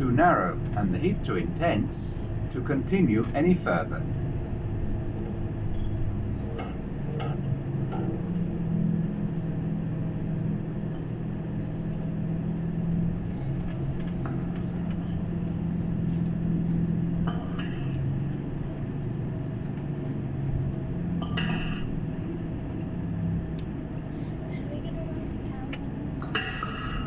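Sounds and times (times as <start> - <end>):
coach engine hum and road noise: 0.0 - 27.0
faint clicks: 23.5 - 24.1.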